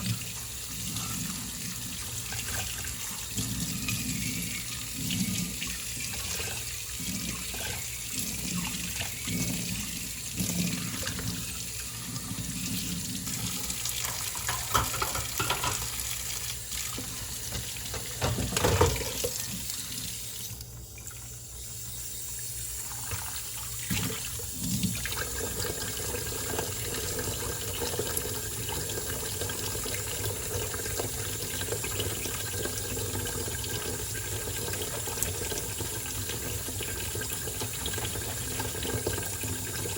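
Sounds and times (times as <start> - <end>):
tap running into sink: 14.1 - 16.1, 16.9 - 19.7
dishes clinking and knocking: 14.4 - 16.0, 17.5 - 19.3.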